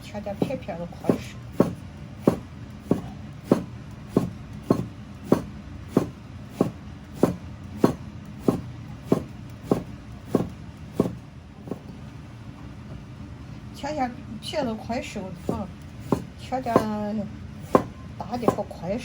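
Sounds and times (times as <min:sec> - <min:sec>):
knife chopping on cutting board: 0:00.4 - 0:11.9, 0:15.4 - 0:17.0, 0:17.6 - 0:18.8.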